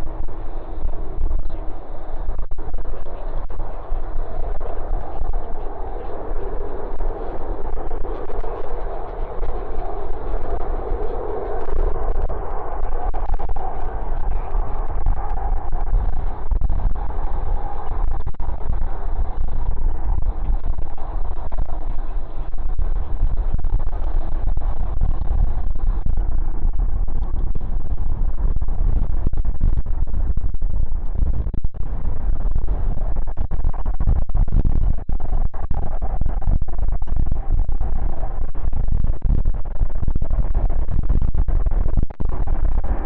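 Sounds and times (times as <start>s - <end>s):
wind buffeting microphone: 0.0s - 43.0s
jet engines of aircraft: 0.1s - 19.6s.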